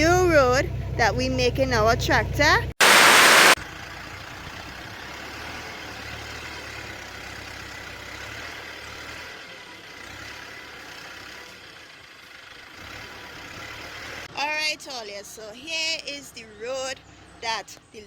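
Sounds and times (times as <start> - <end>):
outdoor hiss: 2.8 - 3.6.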